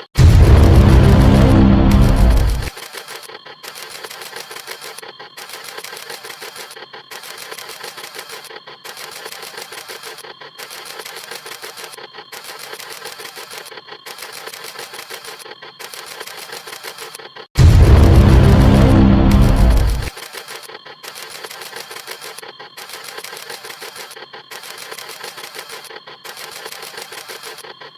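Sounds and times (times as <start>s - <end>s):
loud full sound: 0.0s - 2.7s, 17.6s - 20.1s
camera shutter clicks: 2.0s - 17.2s, 20.2s - 27.7s.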